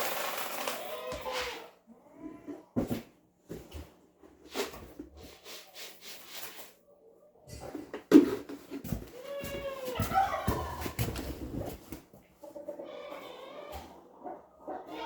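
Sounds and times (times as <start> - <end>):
chicken call: 9.4 - 11.0.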